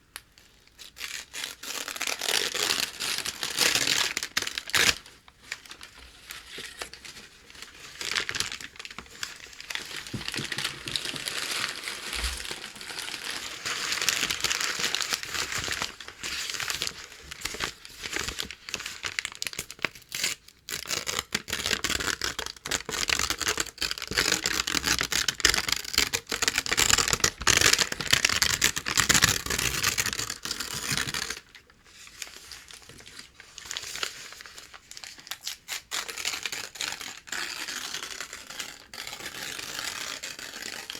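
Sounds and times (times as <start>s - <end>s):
packing paper crinkling and tearing: 0.4s - 40.9s.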